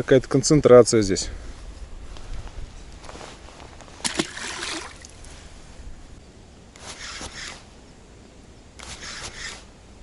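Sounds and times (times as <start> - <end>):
wind rumble on microphone: 1.2 - 4.0
water splashing and sloshing: 3.9 - 5.3.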